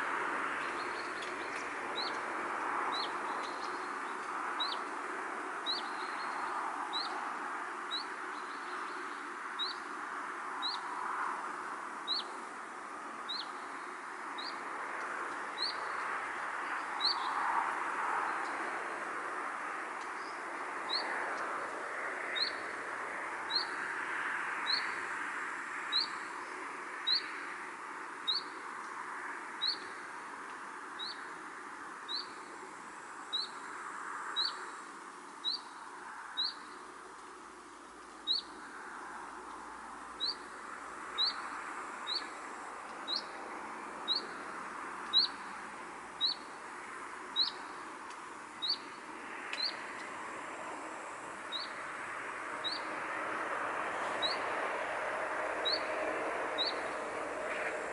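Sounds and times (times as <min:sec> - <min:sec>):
rushing background noise: 0:00.0 - 0:57.9
bird chirping: 0:02.9 - 0:04.9, 0:07.9 - 0:09.9, 0:12.1 - 0:12.4, 0:13.3 - 0:14.6, 0:17.0 - 0:17.4, 0:28.3 - 0:28.6, 0:33.3 - 0:33.6, 0:35.4 - 0:35.7, 0:38.3 - 0:38.6, 0:40.2 - 0:40.5, 0:41.2 - 0:41.5, 0:42.1 - 0:42.4, 0:43.1 - 0:43.4, 0:44.1 - 0:44.4, 0:45.1 - 0:45.4, 0:46.2 - 0:46.6, 0:47.4 - 0:47.7, 0:48.6 - 0:49.0, 0:49.6 - 0:49.8, 0:51.5 - 0:51.8, 0:52.6 - 0:52.9, 0:54.2 - 0:54.4, 0:55.6 - 0:55.9, 0:56.6 - 0:57.0.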